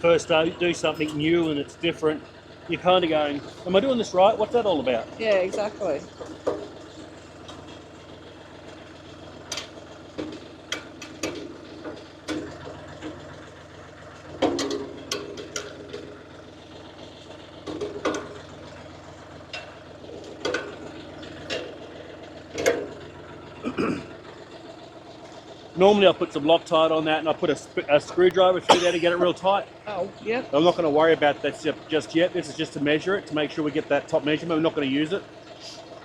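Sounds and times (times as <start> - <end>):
tractor engine idling: 0.0 - 36.0
sharp metal clanks and knocks: 0.4 - 1.5, 9.5 - 13.2, 14.4 - 16.2, 19.5 - 21.8.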